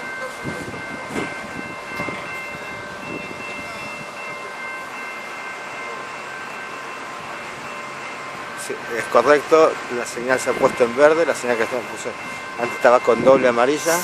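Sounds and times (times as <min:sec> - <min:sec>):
level crossing warning tone: 0:00.0 - 0:14.0.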